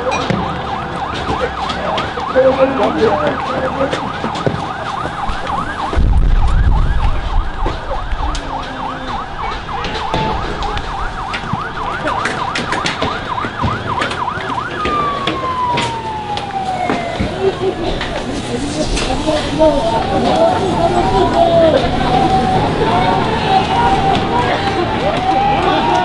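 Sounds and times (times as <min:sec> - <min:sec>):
sharp clicks and bangs: 0:00.0 - 0:18.3
police siren yelping: 0:00.0 - 0:26.0
loud low rumble: 0:05.4 - 0:11.3.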